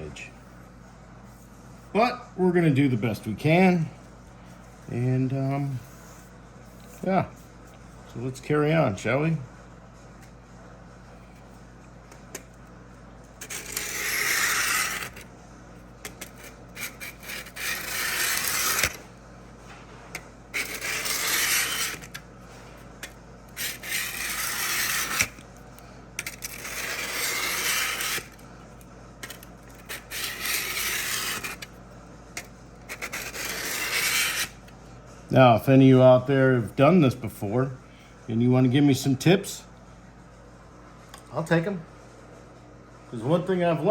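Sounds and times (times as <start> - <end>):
blade scraping on sharpening block: 13.4 - 15.2, 16.1 - 19.0, 20.6 - 22.2, 23.6 - 25.4, 26.2 - 28.4, 29.2 - 31.7, 32.9 - 34.6.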